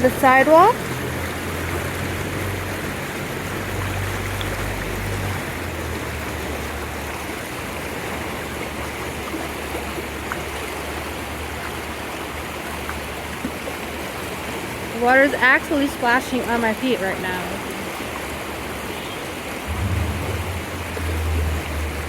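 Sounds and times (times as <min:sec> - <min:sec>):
river rushing: 0:00.0 - 0:22.0
low rumble: 0:19.7 - 0:22.0.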